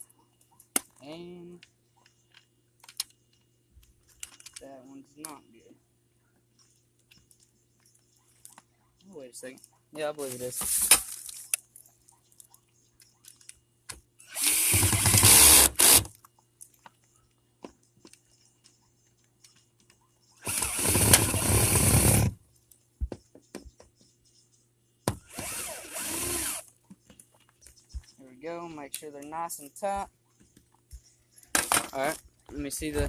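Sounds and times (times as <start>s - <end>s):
power drill driving screws: 14.3s - 16.1s, 20.4s - 22.4s, 25.3s - 26.7s.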